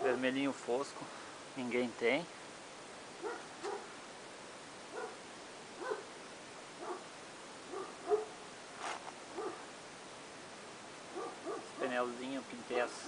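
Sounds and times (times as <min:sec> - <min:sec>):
dog barking: 0:00.0 - 0:00.3, 0:03.2 - 0:04.0, 0:04.9 - 0:05.2, 0:05.8 - 0:06.1, 0:06.8 - 0:07.1, 0:07.7 - 0:08.4, 0:09.3 - 0:09.7, 0:11.1 - 0:12.0.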